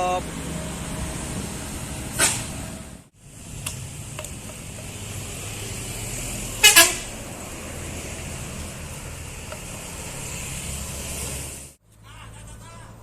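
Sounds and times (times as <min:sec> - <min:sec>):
bus engine rumbling: 0:00.0 - 0:13.0
horn blasts: 0:06.6 - 0:07.2.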